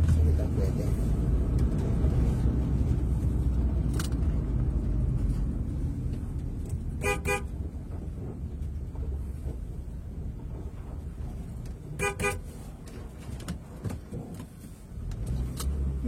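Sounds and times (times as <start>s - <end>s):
engine and road rumble: 0.0s - 16.0s
car horn toots: 7.0s - 7.5s, 12.0s - 12.5s.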